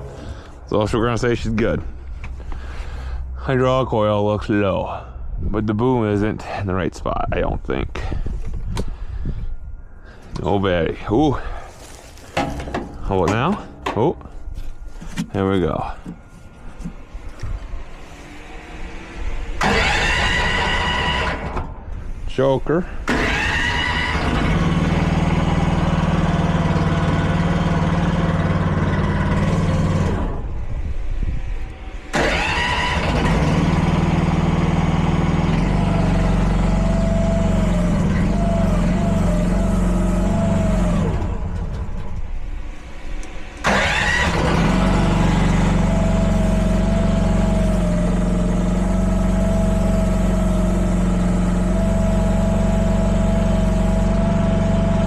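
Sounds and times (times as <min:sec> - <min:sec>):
small gasoline engine running: 0:19.6 - 0:21.6, 0:23.1 - 0:30.5, 0:32.1 - 0:41.9, 0:43.6 - 0:55.0.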